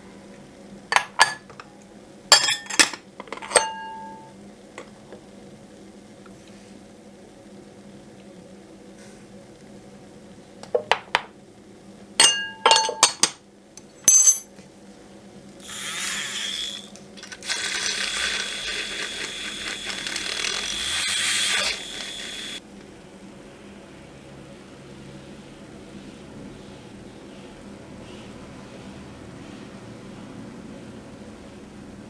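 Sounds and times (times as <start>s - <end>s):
spoon clinking against cup: 2.3s - 4.3s, 12.2s - 13.4s, 14.1s - 14.5s.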